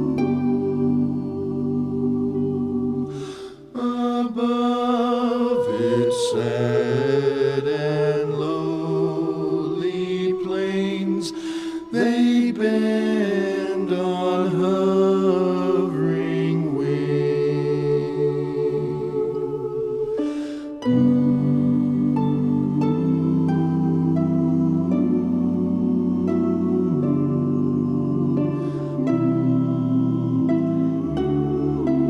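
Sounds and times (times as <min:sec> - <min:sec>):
orchestral accompaniment: 0:00.0 - 0:03.8, 0:15.5 - 0:32.0
choir singing: 0:00.0 - 0:32.0.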